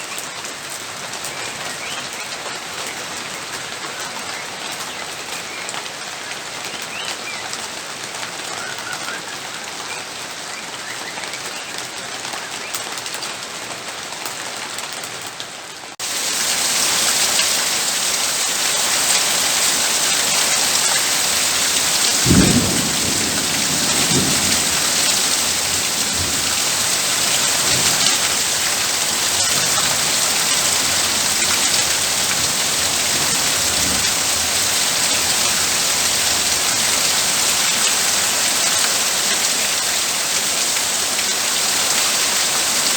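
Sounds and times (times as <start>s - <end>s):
rain on a roof: 0.0s - 42.9s
thunder crack and rumbles: 19.8s - 37.5s.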